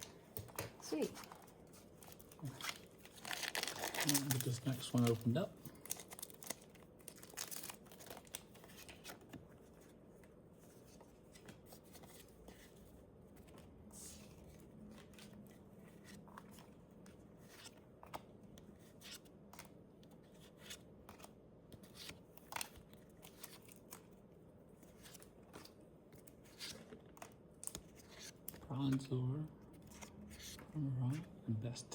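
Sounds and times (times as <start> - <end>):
cards rustling and clicking: 0.0 - 31.4.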